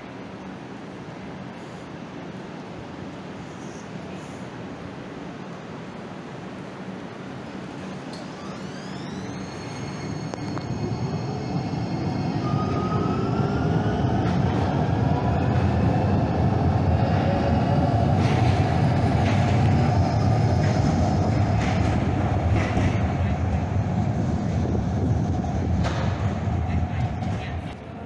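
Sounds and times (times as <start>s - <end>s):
light-rail train pulling away: 0.0s - 28.0s.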